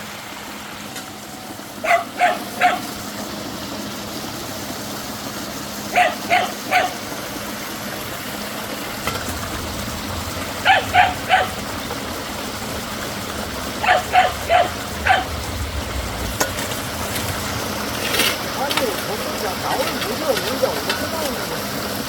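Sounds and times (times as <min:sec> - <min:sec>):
waterfall rushing: 0:00.0 - 0:03.3, 0:05.9 - 0:22.0
dog barking: 0:01.8 - 0:02.9, 0:05.9 - 0:07.0, 0:10.6 - 0:11.6, 0:13.8 - 0:15.4.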